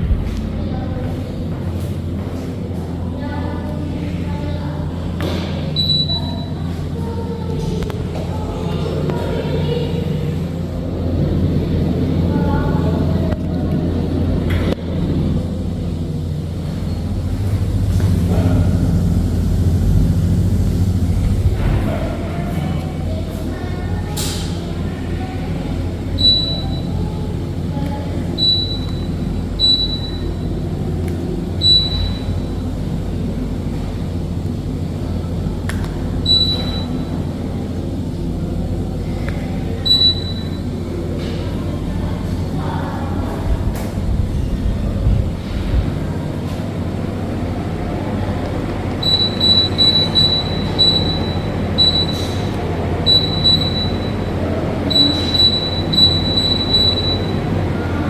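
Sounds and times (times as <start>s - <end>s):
air conditioner humming: 0.0s - 58.0s
short high beeps: 5.8s - 6.5s, 26.2s - 26.9s, 28.4s - 30.4s, 31.6s - 32.3s, 36.3s - 37.0s, 39.8s - 40.6s, 49.0s - 52.3s, 53.1s - 54.3s, 54.9s - 57.4s.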